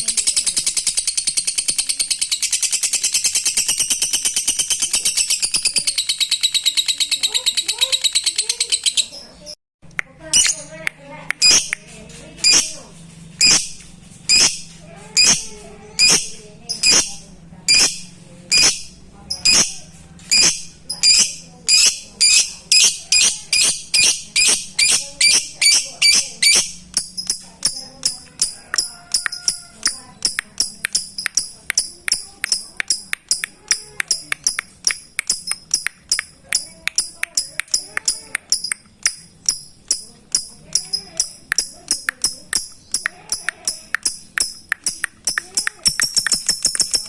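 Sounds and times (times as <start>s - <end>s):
lovebird calling: 11.4s - 38.8s.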